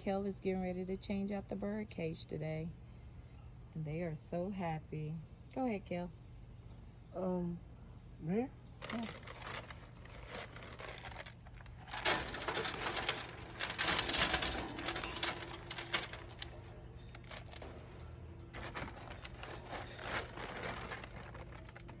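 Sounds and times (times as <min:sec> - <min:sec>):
bedding rustling and crinkling: 0:08.8 - 0:22.0.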